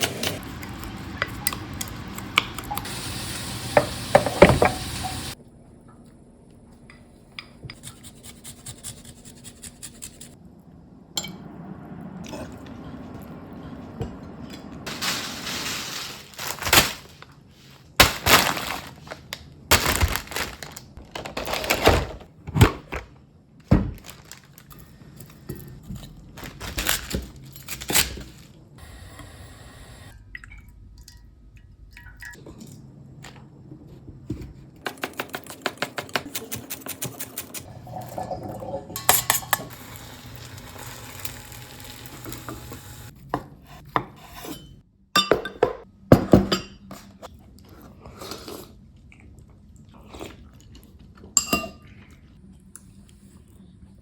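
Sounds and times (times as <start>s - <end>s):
utensils and dishes clinking: 34.9s - 42.8s.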